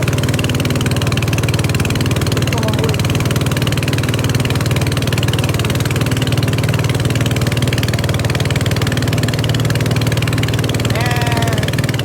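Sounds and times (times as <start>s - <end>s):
boat engine chugging: 0.0s - 12.0s.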